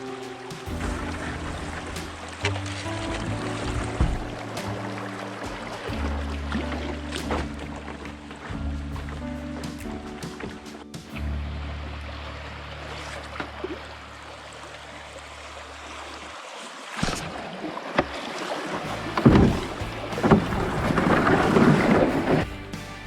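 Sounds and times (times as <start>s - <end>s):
background music: 0.0s - 13.5s, 18.9s - 23.0s
paddle splashing in water: 0.0s - 22.6s.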